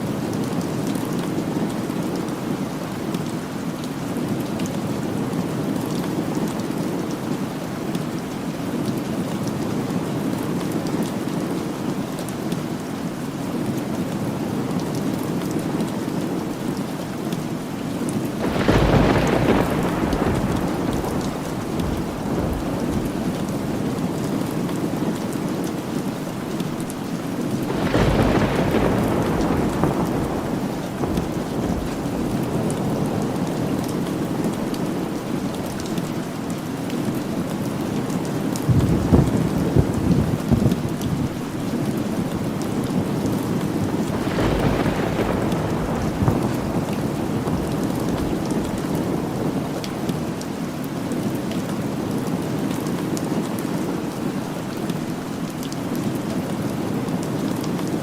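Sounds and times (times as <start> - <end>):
heavy rain: 0.0 - 58.0
rolling thunder: 18.4 - 24.6, 27.6 - 35.0, 38.6 - 41.5, 42.8 - 49.8.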